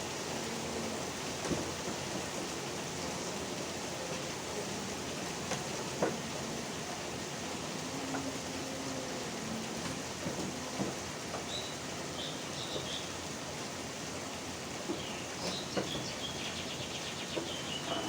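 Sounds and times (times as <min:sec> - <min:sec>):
steady rain: 0:00.0 - 0:18.0.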